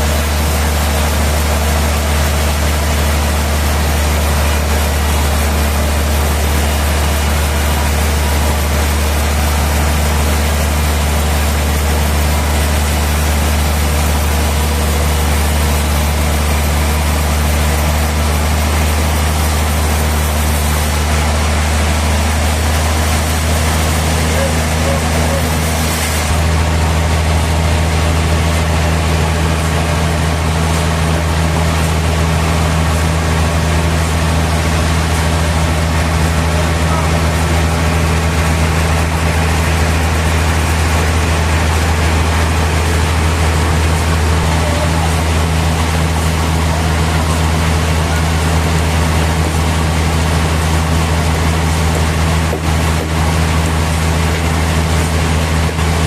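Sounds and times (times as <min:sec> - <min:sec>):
sawmill machinery humming: 0:00.0 - 0:56.0.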